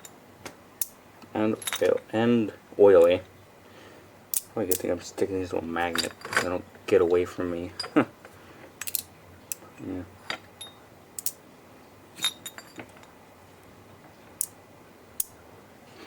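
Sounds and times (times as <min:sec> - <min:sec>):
small metal parts clicking: 0:08.8 - 0:09.6, 0:10.3 - 0:11.4.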